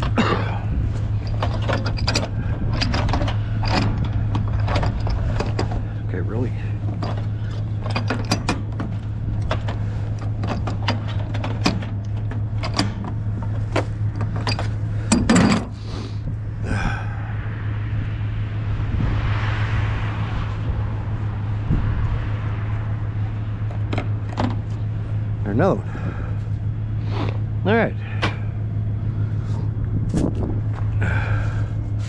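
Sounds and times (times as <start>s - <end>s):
metal clatter: 0.0s - 15.9s, 22.2s - 26.8s
scrap metal knocks and clanks: 0.0s - 15.9s
steady low hum: 0.0s - 32.0s.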